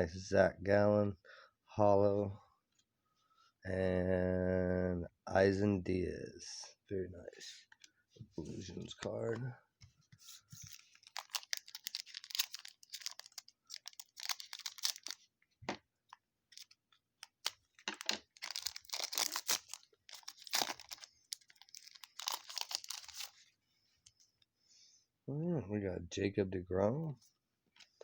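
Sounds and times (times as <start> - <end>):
foil wrapper crinkling and tearing: 10.6 - 15.3, 16.5 - 23.4.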